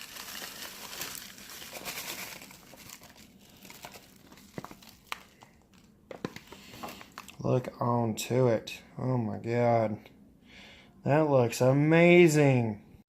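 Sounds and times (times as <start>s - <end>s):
tobacco bag crinkling: 0.0s - 7.4s.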